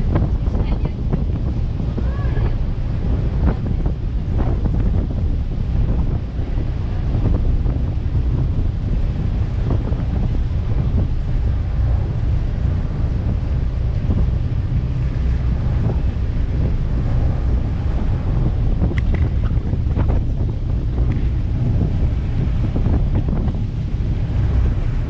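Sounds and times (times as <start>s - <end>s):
sea rushing: 0.0s - 25.0s
wind buffeting microphone: 0.0s - 25.0s.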